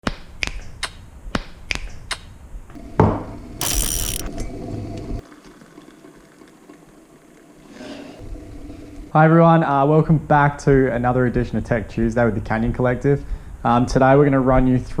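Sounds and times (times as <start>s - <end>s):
sharp mechanical clicks: 3.6s - 4.3s.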